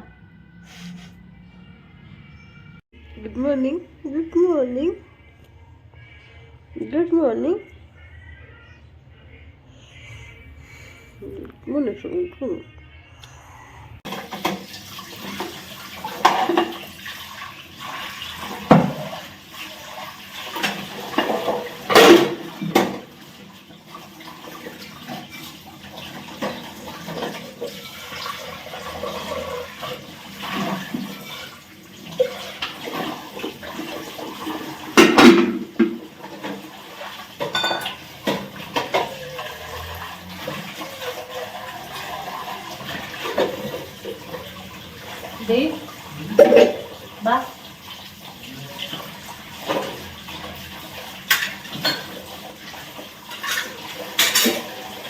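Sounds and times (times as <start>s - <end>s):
dishes and pots clattering: 14.0s - 45.3s, 46.0s - 47.1s, 48.8s - 55.0s
running water: 14.0s - 55.0s.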